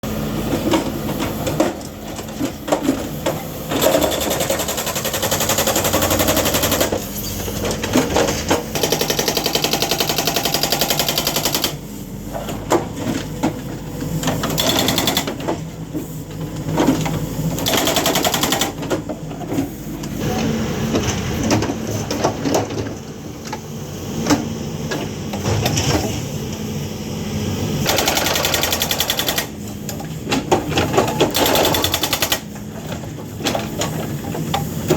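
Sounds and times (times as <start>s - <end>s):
hydraulic breaker hammering: 27.9s - 29.5s.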